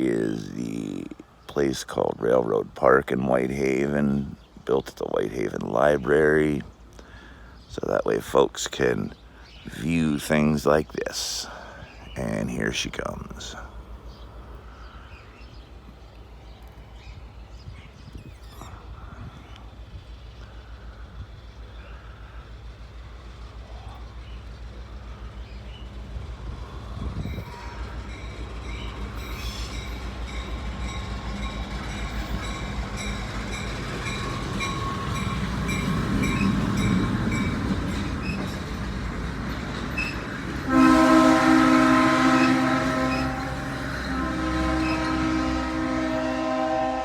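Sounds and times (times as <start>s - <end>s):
diesel train engine rumble: 0.0s - 47.0s
locomotive air horn blasts: 40.7s - 47.0s.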